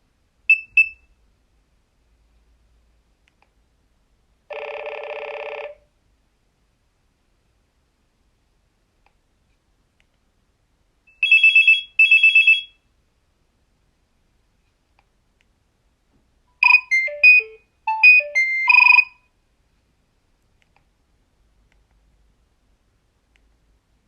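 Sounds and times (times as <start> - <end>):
beeping phone melody: 16.6 - 19.2
high trilling phone beeps: 16.6 - 19.2.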